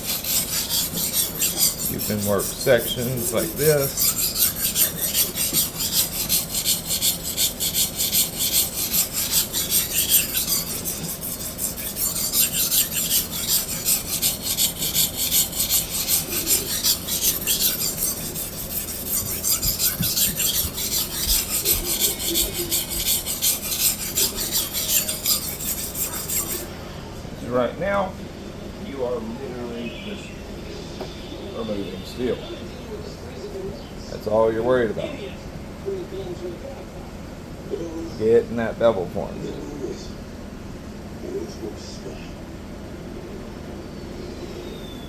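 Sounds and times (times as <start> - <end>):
knife rasping on sharpening stone: 0.0 - 26.7.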